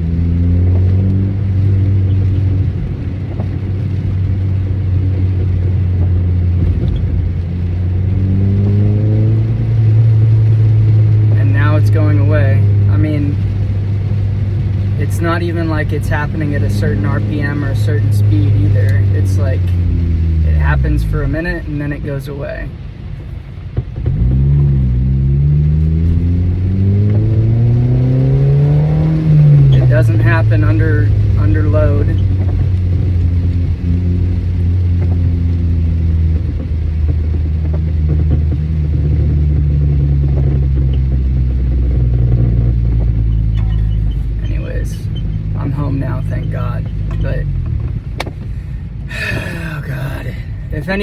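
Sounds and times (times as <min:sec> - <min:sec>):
car engine and road drone: 0:00.0 - 0:51.0
clanking squeaking clatter: 0:43.2 - 0:45.6, 0:46.4 - 0:47.8.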